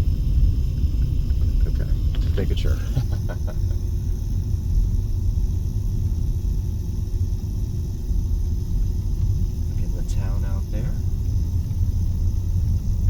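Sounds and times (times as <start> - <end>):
car interior road rumble: 0.0 - 4.3, 9.0 - 13.0
faint steady hum: 0.0 - 13.0.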